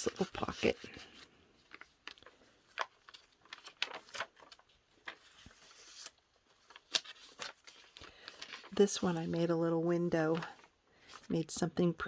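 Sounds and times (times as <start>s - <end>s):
paper rustling: 0.0s - 11.7s.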